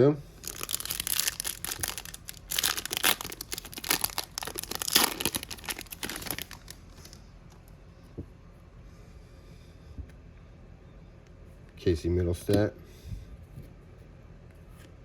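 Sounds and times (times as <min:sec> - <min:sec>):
wrapper tearing and crinkling: 0:00.4 - 0:07.2.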